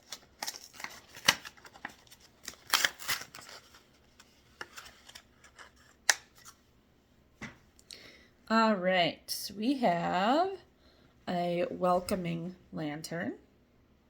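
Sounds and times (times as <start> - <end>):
wrapper crinkling: 0.0 - 6.6.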